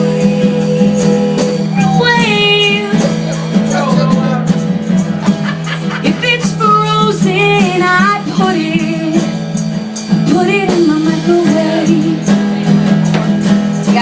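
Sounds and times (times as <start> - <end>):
person singing: 0.0 - 3.6
guitar chords: 0.0 - 14.0.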